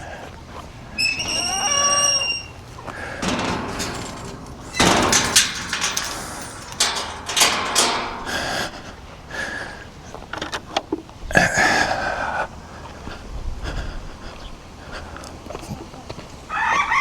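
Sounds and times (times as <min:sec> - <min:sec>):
scrapes and rustling: 0:01.0 - 0:09.0.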